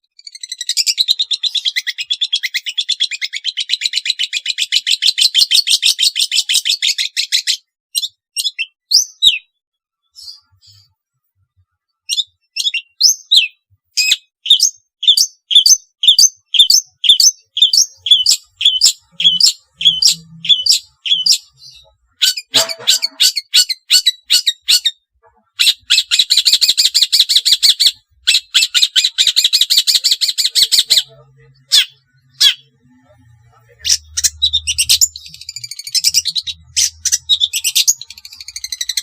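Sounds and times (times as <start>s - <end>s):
shrike calling: 17.0s - 24.9s.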